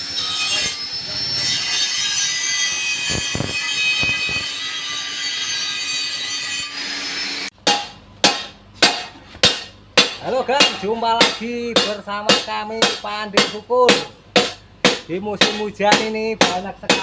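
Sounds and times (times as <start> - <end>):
steel grinding with metallic squeal: 0.0 - 7.5.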